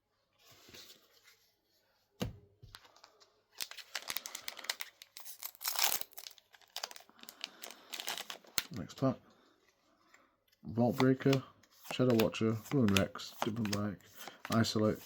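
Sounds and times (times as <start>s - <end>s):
wrapper crinkling and tearing: 3.5s - 8.8s.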